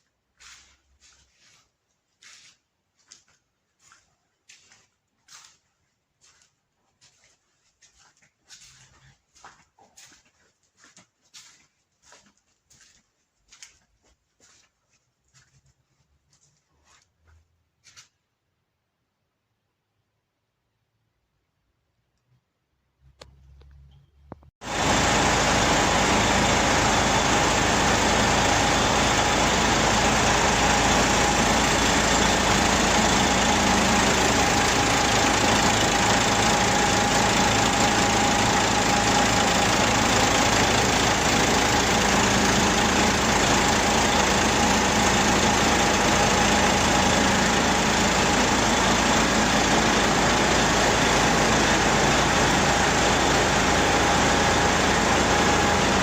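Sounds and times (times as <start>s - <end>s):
truck diesel engine idling: 24.6s - 56.0s.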